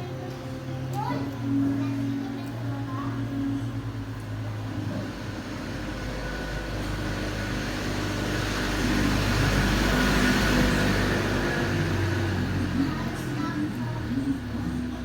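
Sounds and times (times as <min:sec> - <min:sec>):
engine rumble: 0:00.0 - 0:15.0.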